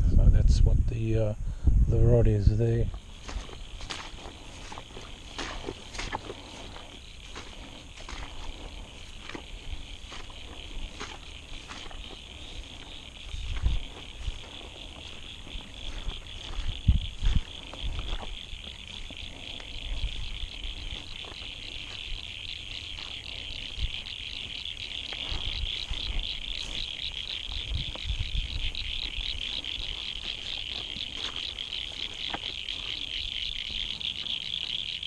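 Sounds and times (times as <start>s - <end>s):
frogs calling: 2.2s - 35.0s.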